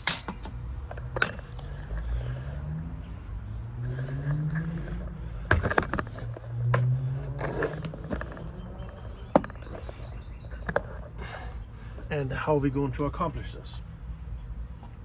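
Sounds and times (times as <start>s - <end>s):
hard parts clacking and knocking: 0.0s - 2.5s, 3.9s - 12.1s.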